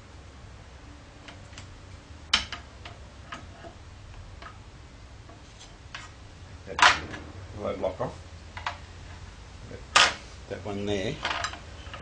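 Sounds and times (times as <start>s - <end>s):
metallic clicks of lathe parts: 11.2s - 12.0s.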